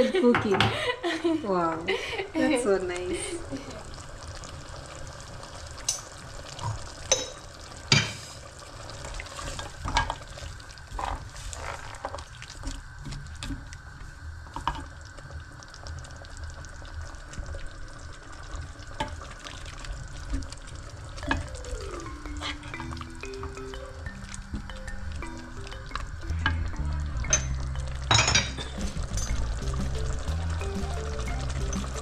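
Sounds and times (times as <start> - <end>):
food sizzling in a pot: 2.4 - 32.0
falling musical notes: 21.2 - 32.0.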